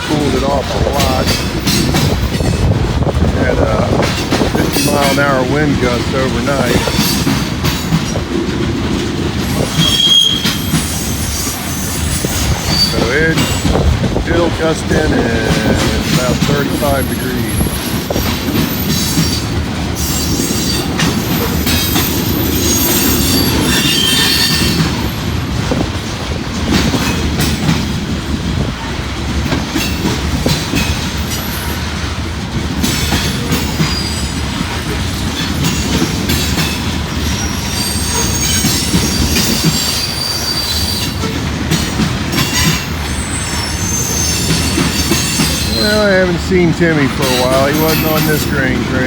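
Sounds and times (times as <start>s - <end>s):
freight train wheels rumbling: 0.0s - 49.0s
high wheel squeal: 9.5s - 13.8s, 16.2s - 25.2s, 33.4s - 41.4s, 42.4s - 46.2s.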